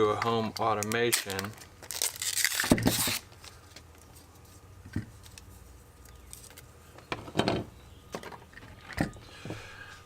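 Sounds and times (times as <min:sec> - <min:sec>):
packaging clicks and rustles: 0:00.2 - 0:04.1.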